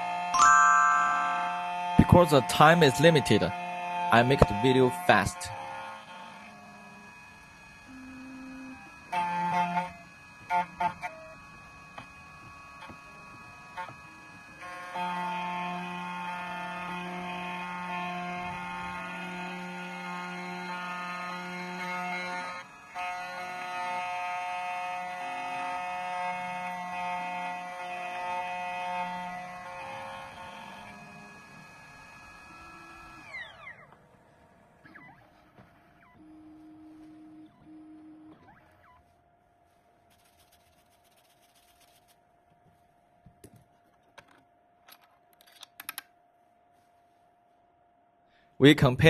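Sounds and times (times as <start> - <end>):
key cutting machine whining: 0.0 - 35.0.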